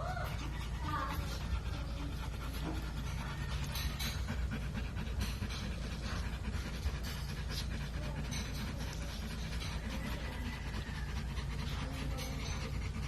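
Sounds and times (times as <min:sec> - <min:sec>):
puppy panting: 0:00.0 - 0:13.0.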